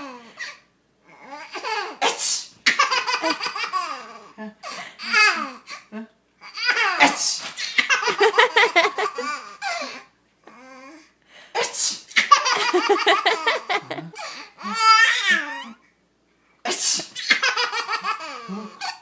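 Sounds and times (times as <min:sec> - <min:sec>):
man sneezing loudly: 0:02.0 - 0:02.6, 0:07.0 - 0:07.9, 0:11.6 - 0:12.4, 0:16.7 - 0:17.5
child laughing and squealing: 0:14.7 - 0:15.8.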